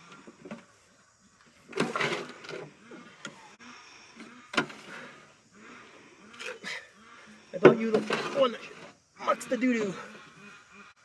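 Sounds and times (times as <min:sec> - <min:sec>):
shovel scraping through manure: 0:01.7 - 0:02.6, 0:08.0 - 0:08.9.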